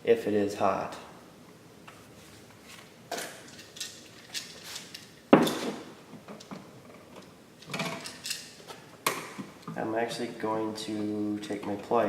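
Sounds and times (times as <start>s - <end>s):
tools rattling: 3.1s - 8.7s
tools clicking and knocking: 3.1s - 9.8s.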